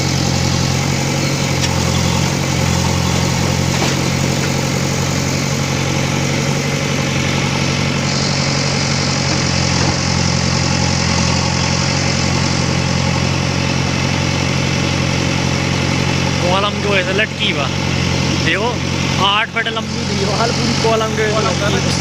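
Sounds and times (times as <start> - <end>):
diesel engine idling: 0.0 - 22.0.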